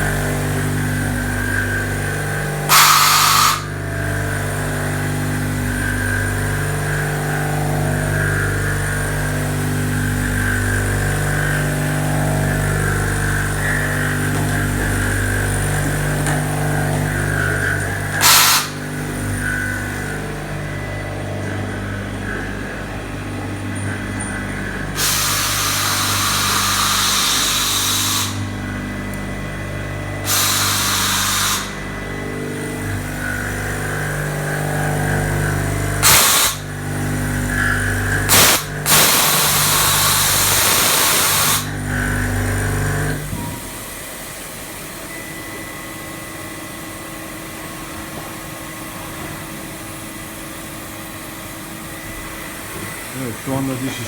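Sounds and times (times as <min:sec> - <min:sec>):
loud hissing: 0:00.0 - 0:28.8, 0:30.2 - 0:32.0, 0:32.7 - 0:41.8
milling machine hum: 0:00.0 - 0:54.0.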